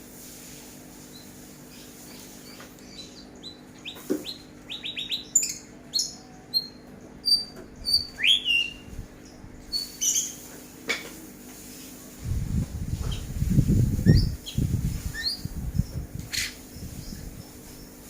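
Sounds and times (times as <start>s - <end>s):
songbird chirping and whistling: 1.2s - 9.0s, 9.7s - 10.4s, 13.9s - 18.0s.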